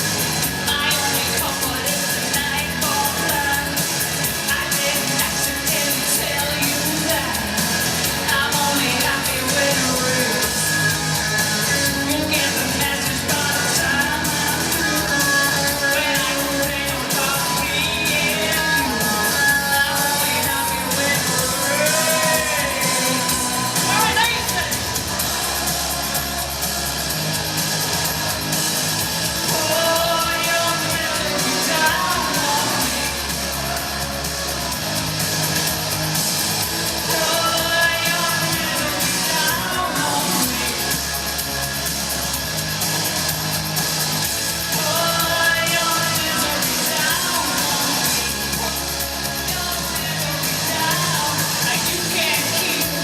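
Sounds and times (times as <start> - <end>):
live rock band playing: 0.0 - 53.0
woman singing: 0.6 - 24.4, 29.4 - 33.5, 37.0 - 40.8, 44.7 - 48.8, 49.4 - 53.0.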